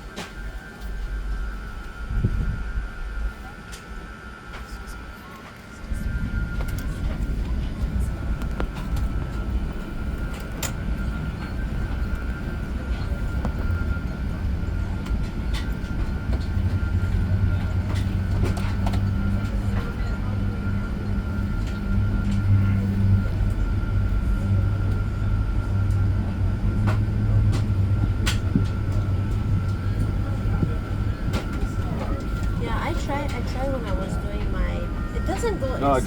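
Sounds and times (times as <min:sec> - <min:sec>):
aircraft cabin engine rumble: 0:00.0 - 0:36.0
constant high whine: 0:00.0 - 0:36.0.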